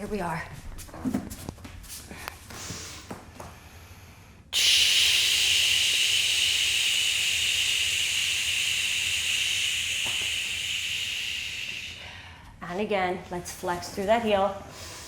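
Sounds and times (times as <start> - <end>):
air hissing: 4.6 - 12.2.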